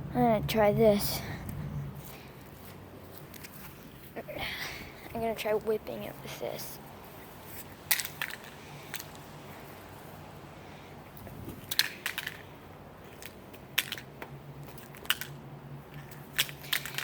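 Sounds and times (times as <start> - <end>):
sharp clicking hits on plastic cube: 16.3 - 17.0.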